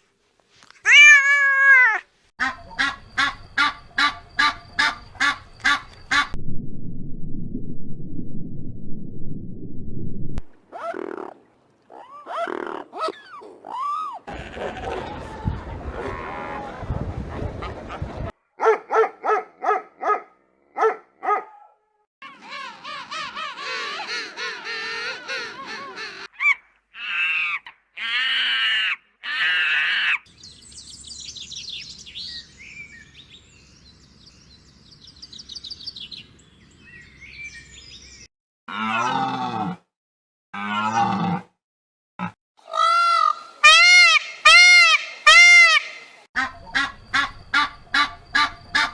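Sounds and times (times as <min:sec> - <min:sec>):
animal and bird calls: 0:02.4 - 0:06.4, 0:22.2 - 0:38.3, 0:45.8 - 0:48.9.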